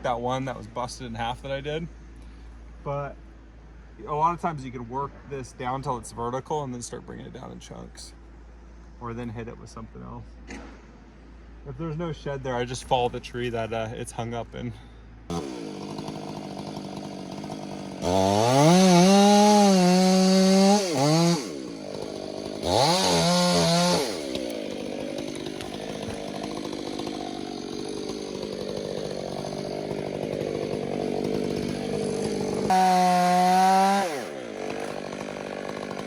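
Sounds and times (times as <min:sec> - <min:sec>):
chainsaw revving: 0:15.3 - 0:36.0.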